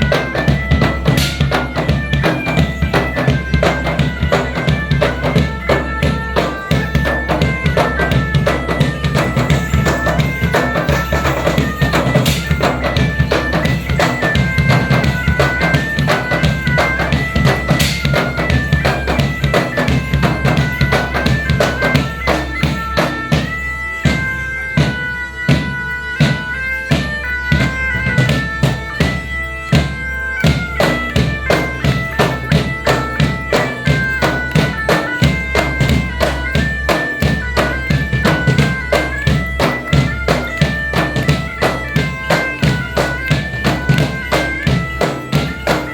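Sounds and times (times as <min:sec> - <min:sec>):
bagpipe melody over drone: 0:00.0 - 0:45.9
steady drum beat: 0:00.0 - 0:45.9.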